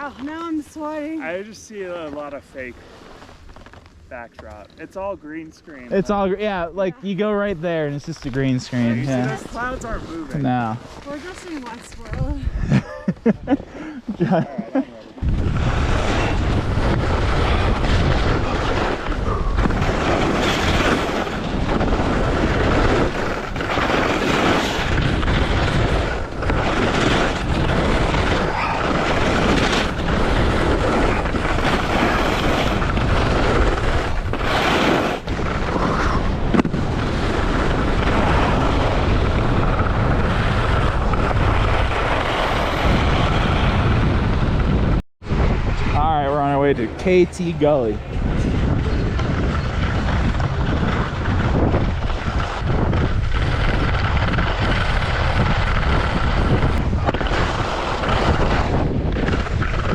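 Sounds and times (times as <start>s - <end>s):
skis scraping over snow: 0.0s - 12.7s, 13.7s - 45.0s, 46.4s - 59.9s
wind buffeting microphone: 4.9s - 14.4s, 15.2s - 59.9s.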